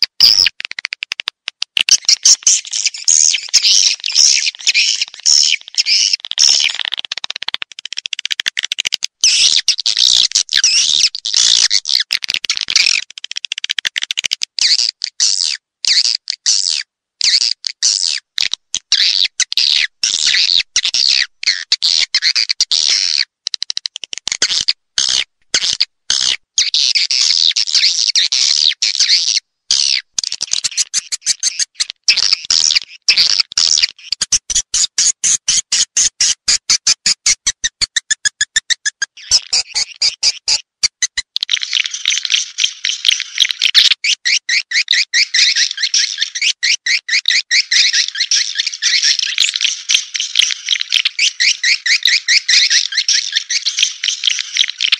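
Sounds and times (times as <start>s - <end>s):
swiftlet twittering and chirping: 1.9s - 7.0s, 9.2s - 12.0s, 26.8s - 54.9s.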